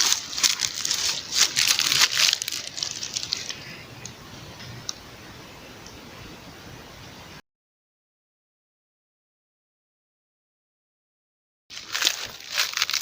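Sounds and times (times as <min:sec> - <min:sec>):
crinkling handling noise: 0:00.0 - 0:05.0, 0:11.7 - 0:13.0
faint steady hiss: 0:00.0 - 0:07.4.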